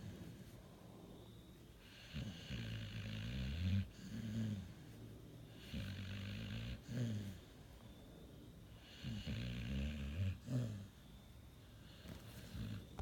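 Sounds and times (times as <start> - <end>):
dog snoring: 1.8 - 4.9, 5.5 - 7.6, 8.7 - 11.1, 11.8 - 13.0.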